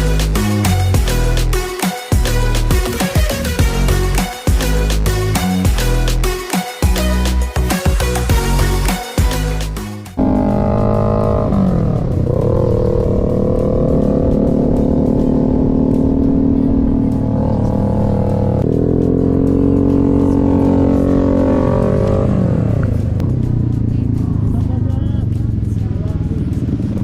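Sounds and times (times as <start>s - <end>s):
background music: 0.0s - 27.0s
scooter engine revving: 10.1s - 27.0s.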